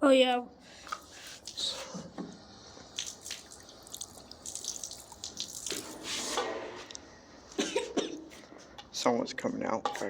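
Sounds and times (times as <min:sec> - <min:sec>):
water running and splashing: 0:02.9 - 0:06.4.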